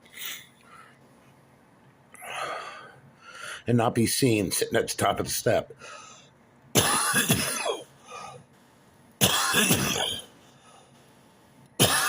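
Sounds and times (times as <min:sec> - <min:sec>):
man coughing: 0:06.8 - 0:08.3, 0:09.2 - 0:10.3, 0:11.8 - 0:12.0.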